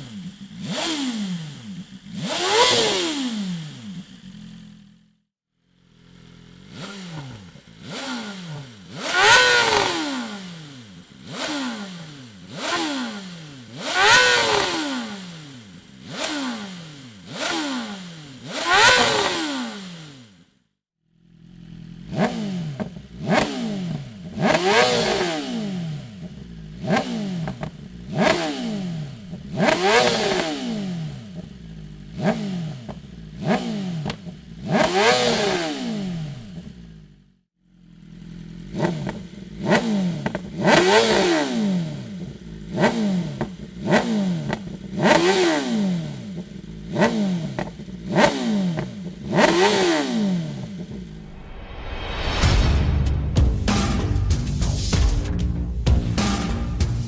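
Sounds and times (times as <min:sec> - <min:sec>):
motorcycle engine throttle blips: 0:00.0 - 0:20.4, 0:21.2 - 0:51.4
motorcycle engine idling: 0:00.0 - 0:51.2.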